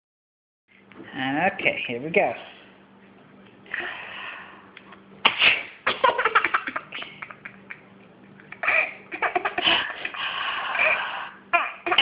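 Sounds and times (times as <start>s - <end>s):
sharp sneeze: 5.2s - 6.0s
baby laughing: 5.9s - 12.0s.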